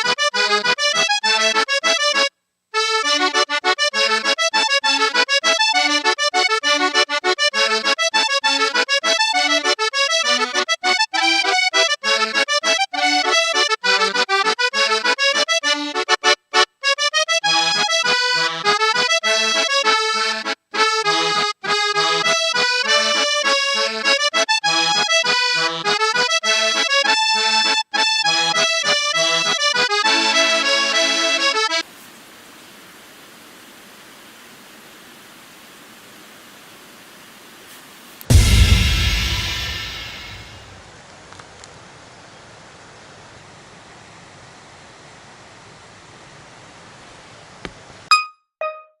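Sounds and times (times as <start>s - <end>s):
bouncy background music: 20.8s - 31.6s.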